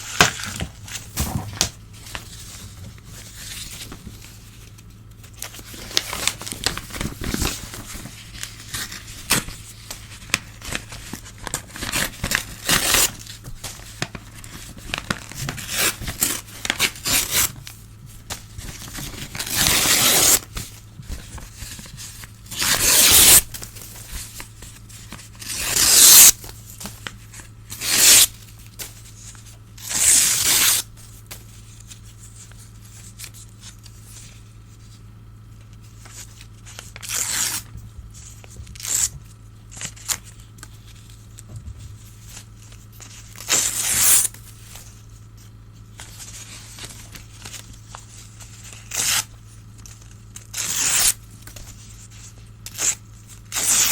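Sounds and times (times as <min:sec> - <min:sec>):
newspaper tearing: 0:00.0 - 0:17.6, 0:18.6 - 0:26.5, 0:27.3 - 0:31.2, 0:36.0 - 0:37.7, 0:42.3 - 0:44.8, 0:46.0 - 0:52.1, 0:52.7 - 0:53.9.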